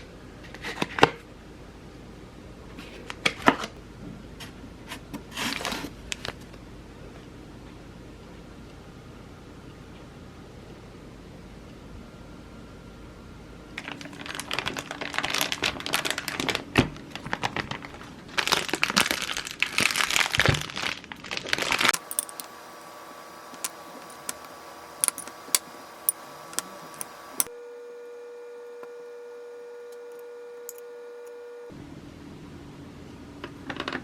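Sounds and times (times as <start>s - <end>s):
plastic packaging crinkling: 13.8s - 22.6s.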